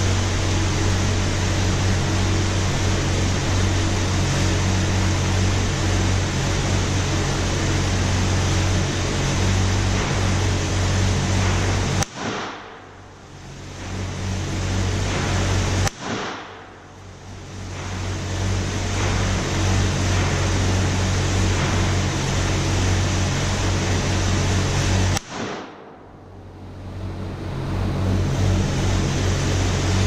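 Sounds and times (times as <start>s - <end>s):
steady background rush: 0.0s - 30.0s
gunshots: 12.0s - 12.9s, 15.1s - 16.8s, 25.2s - 26.0s.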